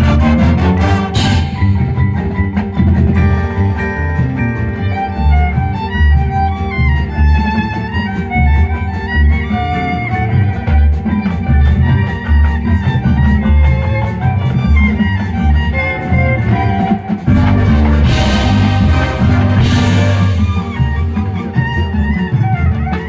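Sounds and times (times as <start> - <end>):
heavy low drum beat: 0.0 - 3.8, 17.3 - 22.8
marching band playing: 0.0 - 4.6, 16.4 - 23.0.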